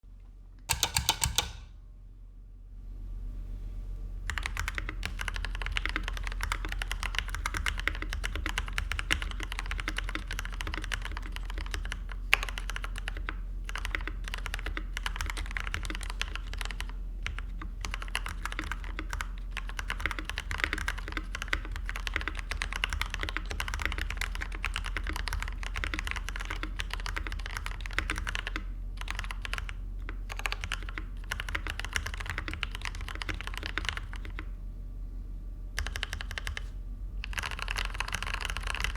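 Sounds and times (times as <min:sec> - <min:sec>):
mechanical keyboard typing: 0:00.7 - 0:01.7, 0:04.3 - 0:34.5, 0:35.8 - 0:38.9.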